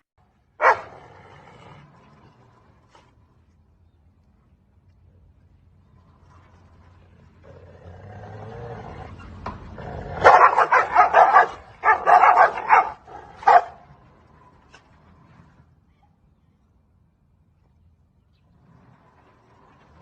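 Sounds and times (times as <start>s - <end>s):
dog barking: 0.6s - 1.0s, 10.2s - 13.8s.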